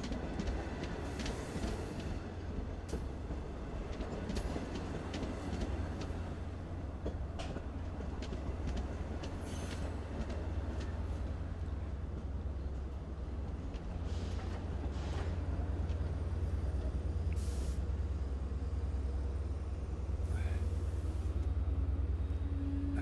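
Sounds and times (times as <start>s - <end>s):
train rumbling past: 0.0s - 23.0s.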